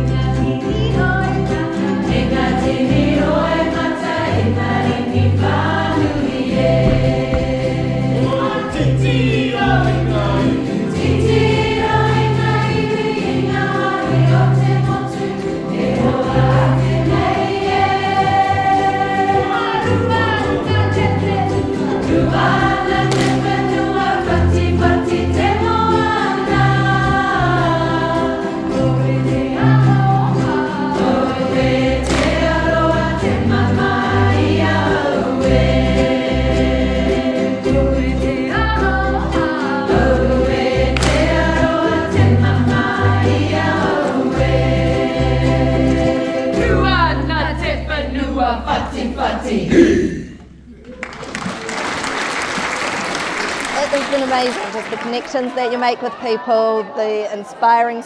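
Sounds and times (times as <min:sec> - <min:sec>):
group of voices singing: 0:00.0 - 0:50.8
pulsing bass line: 0:02.1 - 0:15.2, 0:19.9 - 0:50.8.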